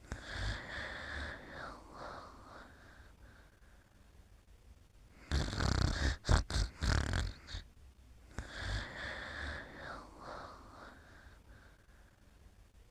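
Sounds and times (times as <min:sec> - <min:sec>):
rattling snore: 0:05.2 - 0:07.6.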